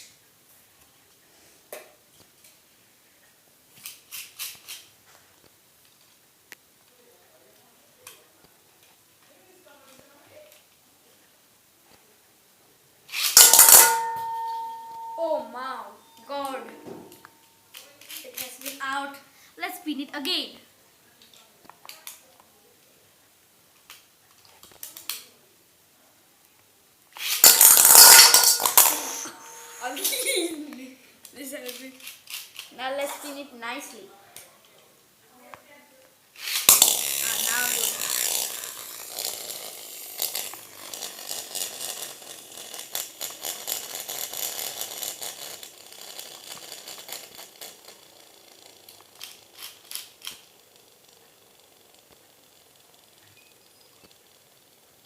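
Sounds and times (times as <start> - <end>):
spinning top clattering: 13.1 - 17.4, 27.2 - 30.4, 36.4 - 55.0
spinning top launch whir: 13.2 - 15.2, 27.2 - 30.2, 36.4 - 53.2
toy clicking into launcher: 13.2 - 15.6, 27.2 - 30.2, 36.4 - 50.8.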